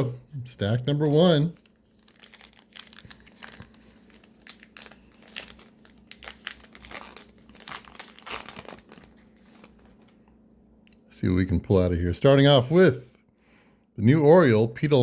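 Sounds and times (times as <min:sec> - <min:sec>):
wrapper tearing and crinkling: 0:01.6 - 0:10.1.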